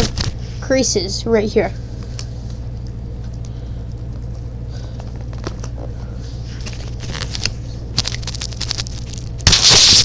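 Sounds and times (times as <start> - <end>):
steady low hum: 0.0 - 10.0
paper and tape crinkling: 6.6 - 10.0.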